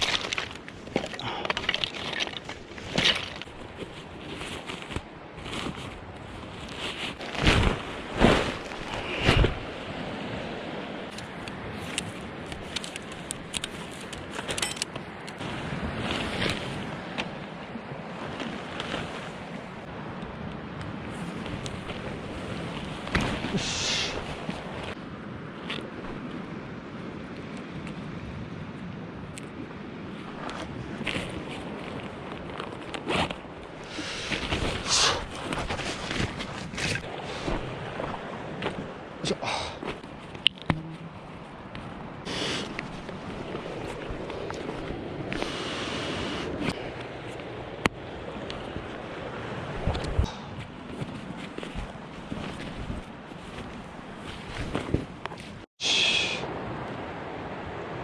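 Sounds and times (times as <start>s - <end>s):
gear rustling and scraping: 0.0s - 9.0s, 11.8s - 15.4s, 50.8s - 55.6s
outdoor background noise: 0.0s - 58.0s
rushing wind: 0.0s - 58.0s
light clicks and clinks: 12.8s - 15.4s.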